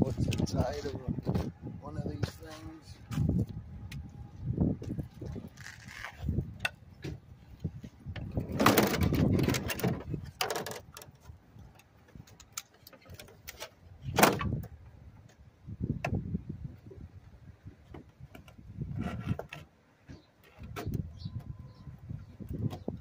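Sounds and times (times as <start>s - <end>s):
casing scraping and rattling: 4.9s - 6.4s.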